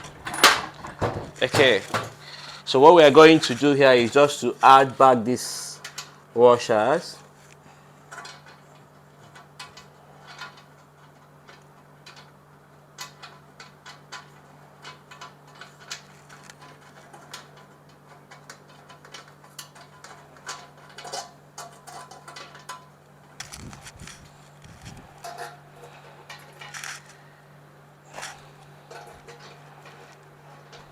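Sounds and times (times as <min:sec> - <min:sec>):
small metal parts clinking: 0:18.2 - 0:27.2.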